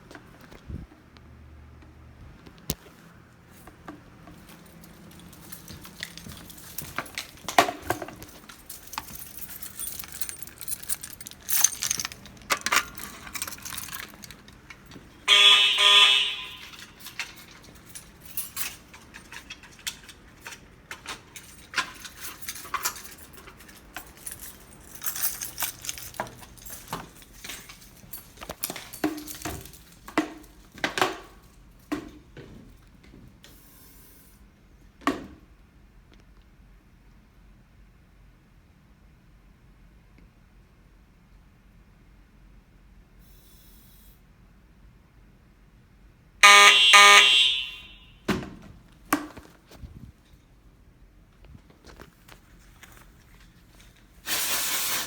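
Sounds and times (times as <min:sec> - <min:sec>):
clicks and rattles: 0:04.3 - 0:15.2, 0:16.6 - 0:31.3
fire alarm horn buzzing: 0:15.2 - 0:17.2, 0:46.4 - 0:48.3.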